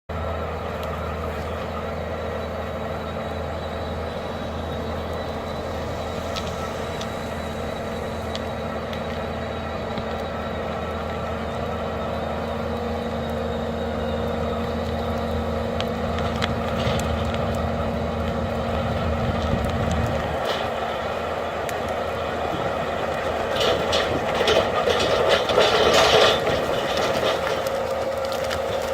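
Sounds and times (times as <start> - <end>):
skid steer engine and mulcher: 0.1 - 28.9
rotor cracking wood: 0.7 - 28.9.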